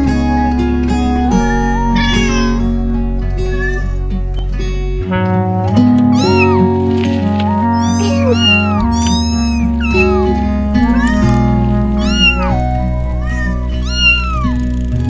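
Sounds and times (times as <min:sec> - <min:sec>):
music with held notes: 0:00.0 - 0:15.0
cat meowing: 0:01.4 - 0:04.2, 0:06.1 - 0:06.8, 0:07.7 - 0:14.7.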